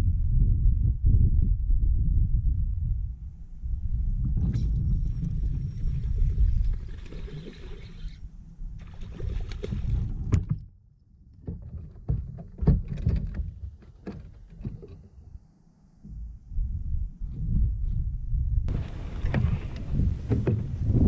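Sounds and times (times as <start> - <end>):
wind rumble on microphone: 0.0 - 10.7, 11.3 - 21.0
knocks against kayak hull: 19.2 - 20.8.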